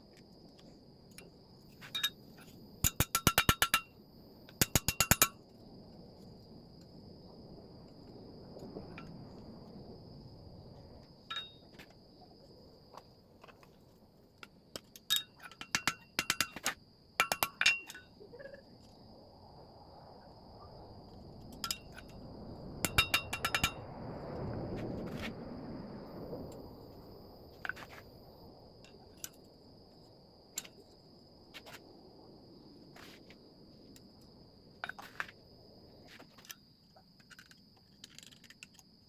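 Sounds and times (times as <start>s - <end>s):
hammer striking steel on anvil: 17.2s - 18.0s.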